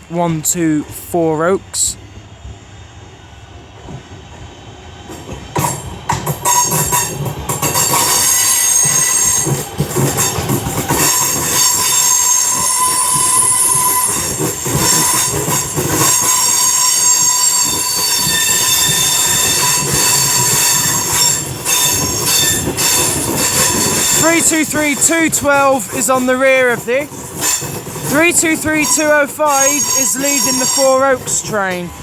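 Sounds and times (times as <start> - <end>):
electric train slowing: 0.0 - 32.0
rail clatter: 5.1 - 32.0
high-pitched squeal: 27.4 - 31.5.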